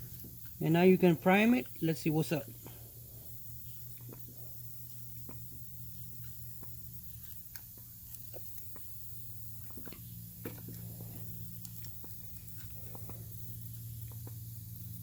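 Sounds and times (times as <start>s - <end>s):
steady low hum: 0.0s - 15.0s
primer bulb clicks and squishes: 3.7s - 15.0s.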